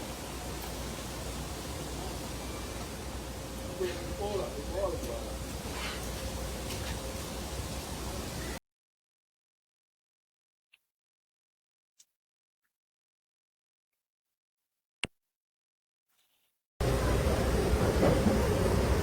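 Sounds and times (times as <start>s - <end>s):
noisy ambience: 0.0s - 8.6s, 16.8s - 19.0s.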